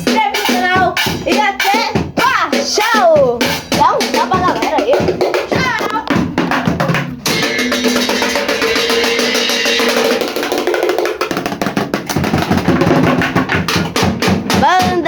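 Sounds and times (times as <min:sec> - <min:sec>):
band playing instrumental music: 0:05.5 - 0:10.8.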